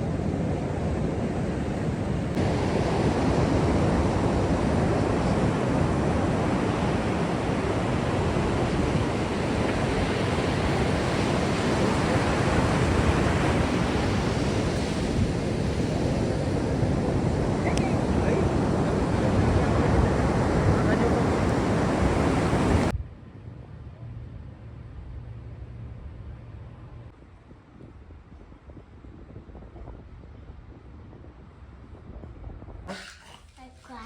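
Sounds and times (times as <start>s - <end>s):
ocean surf washing onto beach: 0.0s - 22.9s.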